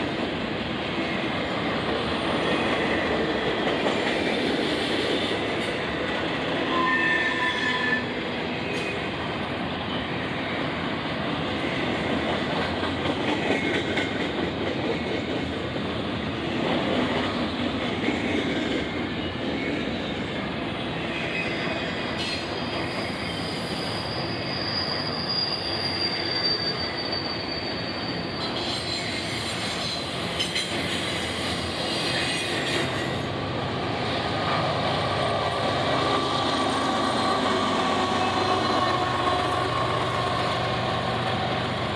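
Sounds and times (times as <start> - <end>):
freight train wheels rumbling: 0.0 - 41.9
high wheel squeal: 6.6 - 8.1, 20.9 - 33.4.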